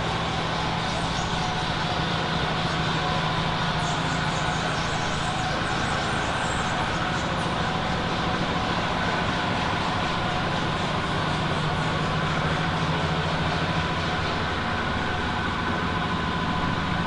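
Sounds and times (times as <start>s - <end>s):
steady mechanical drone: 0.0s - 17.0s.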